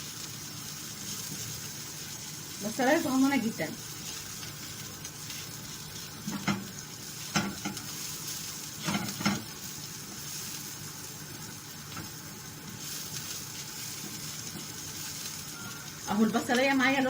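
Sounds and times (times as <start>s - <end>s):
onion sizzling in a frying pan: 0.0s - 17.0s
utensil scraping against pan: 8.8s - 9.5s.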